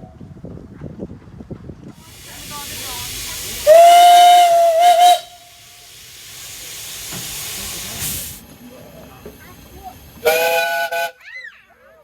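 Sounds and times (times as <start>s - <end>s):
steam hissing: 2.0s - 11.1s
steam locomotive whistle: 2.1s - 7.2s, 10.2s - 11.2s.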